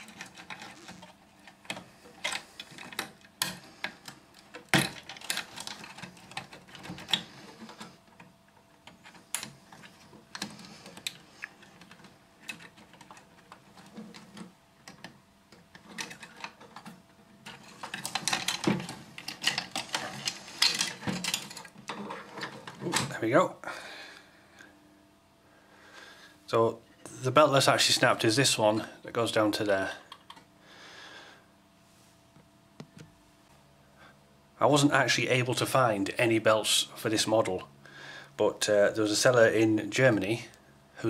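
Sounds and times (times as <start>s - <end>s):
clicks and rattles of printer parts: 0.0s - 23.2s.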